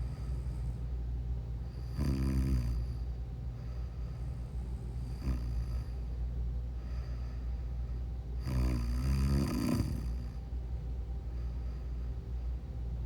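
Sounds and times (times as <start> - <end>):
steady low hum: 0.0 - 13.0
person snoring: 1.8 - 2.9, 5.1 - 5.9, 8.4 - 10.2.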